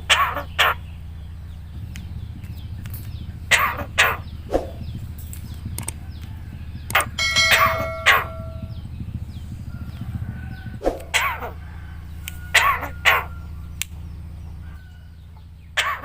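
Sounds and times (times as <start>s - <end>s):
myna harsh calls: 3.5s - 4.2s.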